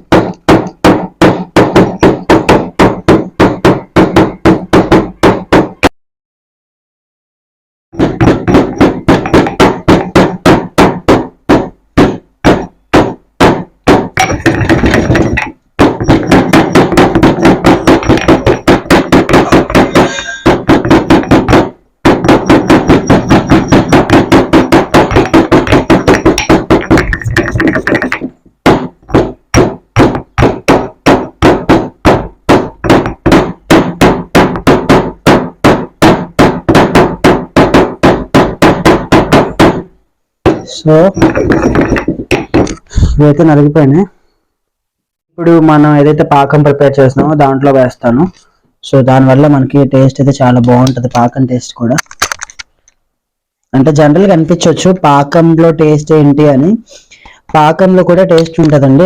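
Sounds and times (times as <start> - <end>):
pods pounded in a mortar: 0.0 - 5.9, 8.0 - 43.3, 57.2 - 59.0.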